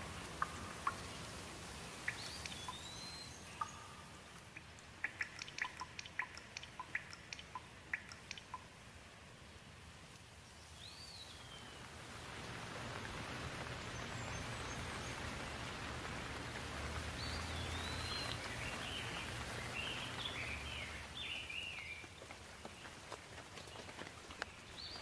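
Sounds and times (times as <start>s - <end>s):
steady rain falling: 0.0s - 25.0s
bird chirping and whistling: 2.1s - 4.0s.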